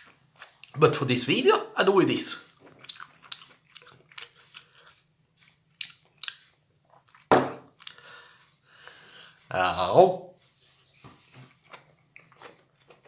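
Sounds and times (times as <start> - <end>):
wet chewing mouth smacks: 2.6 - 8.0.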